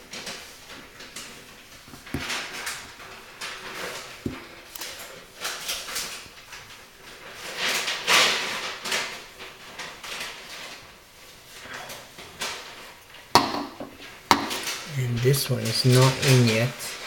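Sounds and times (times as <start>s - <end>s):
hands scraping and rustling: 0.0s - 13.2s.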